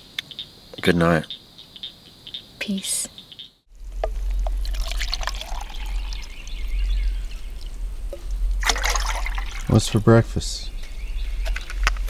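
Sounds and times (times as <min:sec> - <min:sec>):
steady low rumble: 0:03.7 - 0:12.0
water dripping: 0:03.7 - 0:12.0
water pouring into a container: 0:03.8 - 0:10.1.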